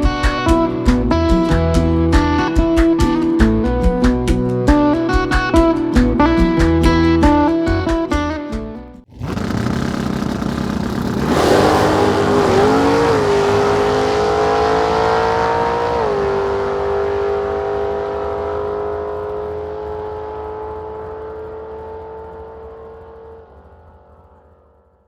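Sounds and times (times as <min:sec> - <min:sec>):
car engine at high revs: 0:09.1 - 0:24.7.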